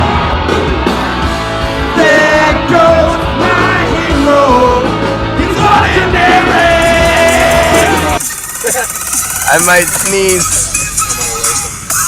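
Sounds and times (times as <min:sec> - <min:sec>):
live band music: 0:00.0 - 0:12.0
person singing: 0:02.0 - 0:08.2.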